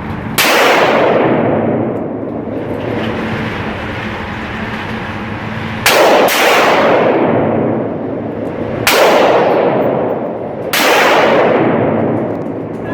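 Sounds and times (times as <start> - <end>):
long rolling echo: 0.0 - 12.9
sharp crack: 0.3 - 3.0, 5.8 - 12.9
handgun shots: 0.4 - 1.4, 5.9 - 7.3, 8.9 - 10.0, 10.7 - 12.3.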